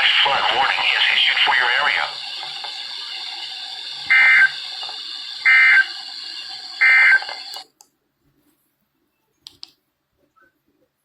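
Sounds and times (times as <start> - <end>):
radio hiss: 0.0 - 7.8
shrill digital screeches: 0.2 - 7.6
faint click: 9.4 - 9.8.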